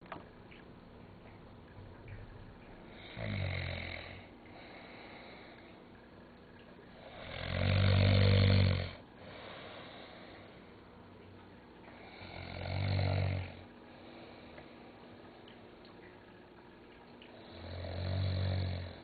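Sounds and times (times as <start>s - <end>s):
man snoring: 3.0s - 4.3s, 7.1s - 9.0s, 12.1s - 13.6s, 17.5s - 19.0s.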